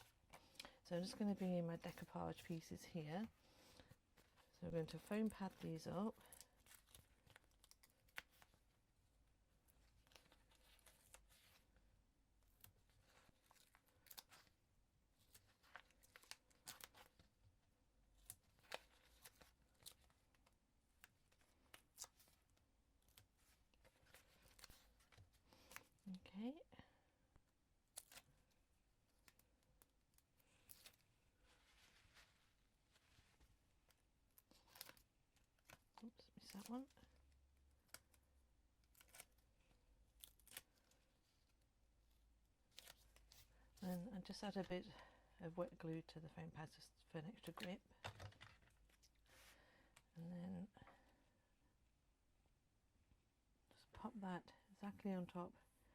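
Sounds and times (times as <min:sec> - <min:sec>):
paper and card crinkling: 0:00.0 - 0:08.7, 0:09.7 - 0:11.8, 0:12.4 - 0:14.6, 0:15.2 - 0:17.3, 0:18.1 - 0:26.0, 0:27.9 - 0:41.6, 0:42.6 - 0:44.7
soft ticks of card pieces: 0:18.2 - 0:26.0, 0:29.0 - 0:39.5.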